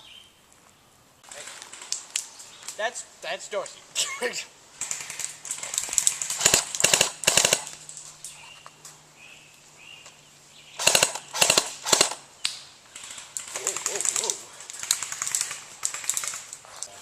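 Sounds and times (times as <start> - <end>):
airsoft guns firing bursts: 4.8 - 7.8, 10.8 - 12.2, 12.9 - 16.6.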